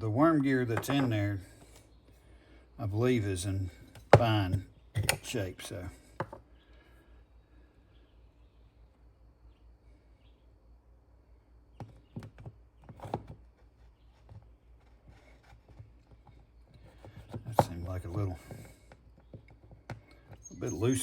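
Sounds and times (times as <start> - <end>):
knocks and clicks of parts handled: 0.7 - 1.2, 3.9 - 5.4, 6.2 - 6.5.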